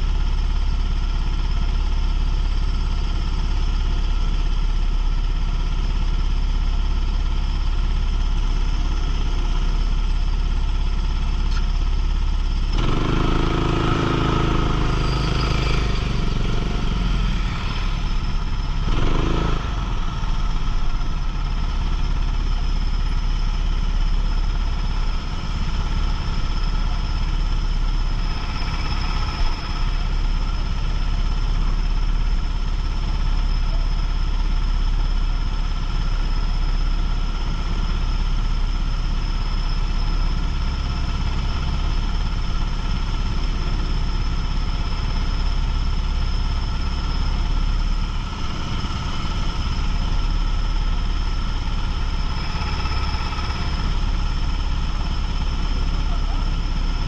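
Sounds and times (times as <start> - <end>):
go-kart engine racing: 12.7 - 21.4, 40.5 - 57.0.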